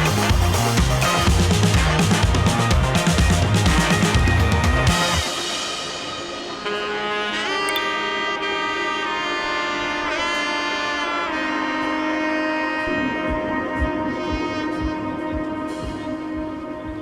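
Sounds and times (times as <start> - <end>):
drums: 0.0 - 7.9, 12.8 - 17.0
saxophone melody with sliding notes: 6.6 - 17.0.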